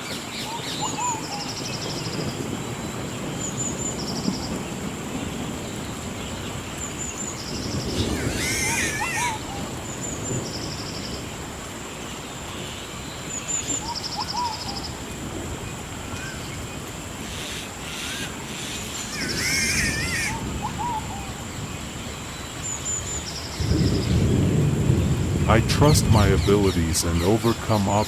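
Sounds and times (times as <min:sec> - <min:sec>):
high insect drone: 0:07.4 - 0:11.2, 0:13.4 - 0:28.0
warbling bird phrase: 0:08.0 - 0:09.7, 0:17.3 - 0:21.1, 0:25.5 - 0:28.0
rapid pulsed insect trill: 0:13.4 - 0:25.5.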